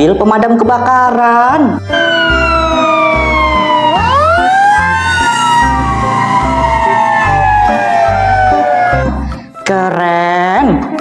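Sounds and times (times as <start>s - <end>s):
fire engine siren wailing: 1.9s - 9.3s.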